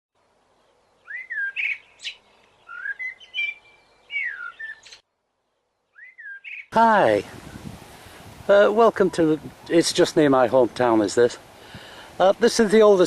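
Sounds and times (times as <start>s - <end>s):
songbird whistling and chirping: 0.6s - 5.0s, 5.8s - 6.7s.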